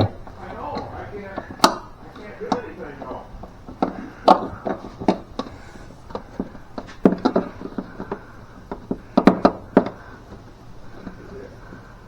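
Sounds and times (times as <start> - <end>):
cable knocking and tapping: 0.0 - 11.3.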